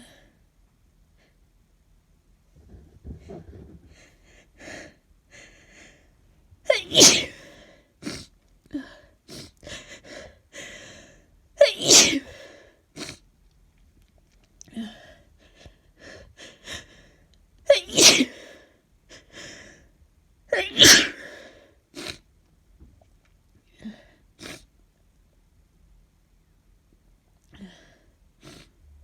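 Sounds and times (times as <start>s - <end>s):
woman sneezing: 6.7s - 7.6s, 11.6s - 12.4s, 17.7s - 18.5s, 20.5s - 21.4s.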